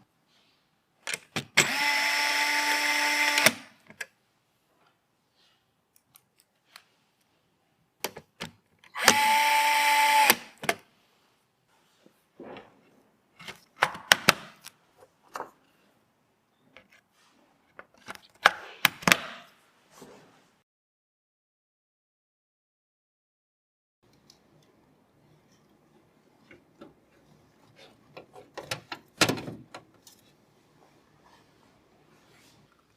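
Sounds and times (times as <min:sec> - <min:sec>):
electric screwdriver whirring: 0:01.6 - 0:03.7, 0:09.0 - 0:10.6.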